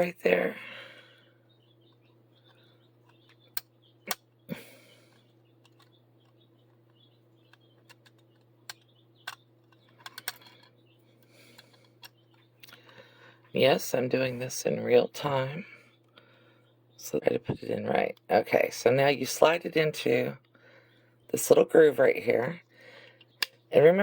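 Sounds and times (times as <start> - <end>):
faint steady hum: 0.0 - 24.0
clicks and taps of plastic parts: 5.6 - 10.8.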